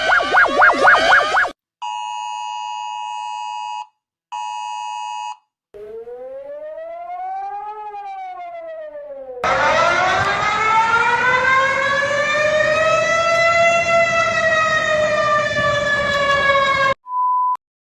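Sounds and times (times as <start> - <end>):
siren wailing: 0.0 - 1.6, 5.8 - 17.0.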